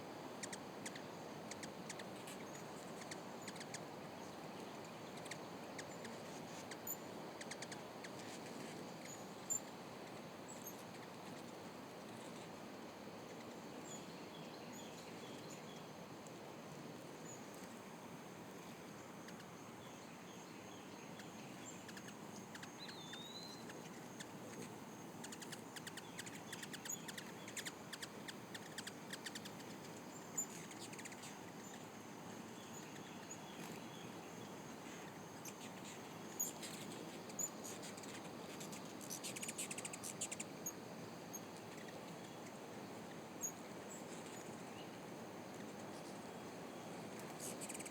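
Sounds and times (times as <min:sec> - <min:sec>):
faint steady hiss: 0:00.0 - 0:47.9
hummingbirds chirping: 0:00.4 - 0:11.4, 0:19.2 - 0:32.0, 0:32.6 - 0:42.4, 0:43.0 - 0:44.9, 0:45.5 - 0:47.9.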